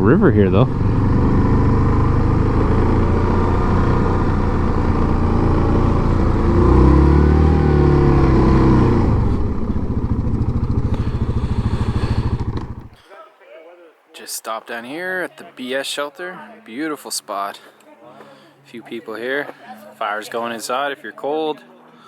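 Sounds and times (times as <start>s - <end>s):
single-cylinder engine running: 0.0s - 13.0s.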